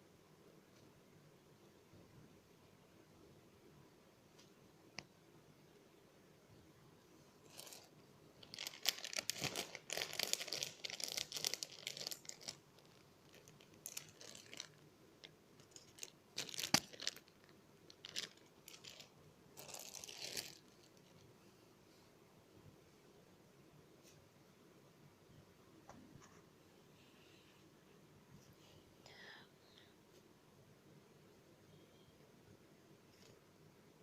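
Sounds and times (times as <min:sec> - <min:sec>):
crinkling crunching handling noise: 0:07.4 - 0:21.3.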